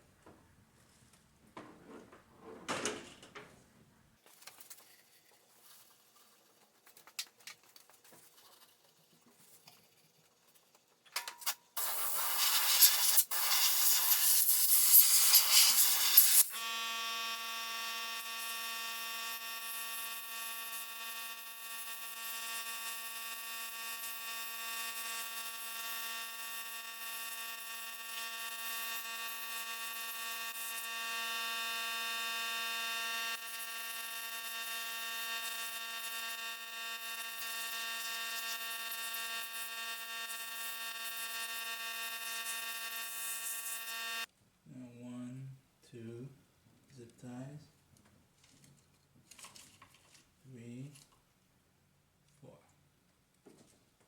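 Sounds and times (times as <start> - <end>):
loud even hiss: 11.8 - 16.5.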